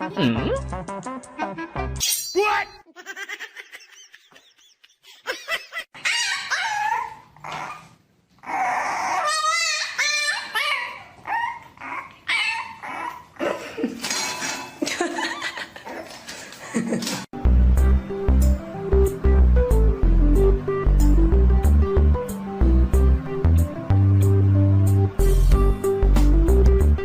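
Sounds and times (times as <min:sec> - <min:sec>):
dog whining and yipping: 0:06.0 - 0:13.4
dog howl-like cry: 0:08.4 - 0:13.2.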